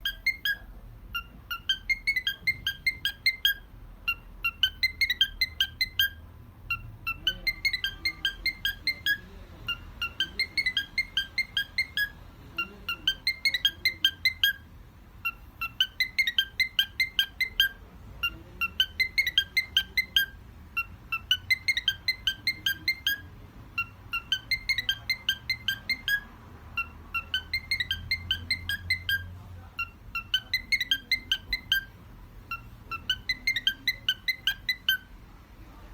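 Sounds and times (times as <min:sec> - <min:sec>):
bird whistling ringtone imitation: 0:00.0 - 0:12.2, 0:13.0 - 0:14.6, 0:15.3 - 0:31.9, 0:32.5 - 0:35.1.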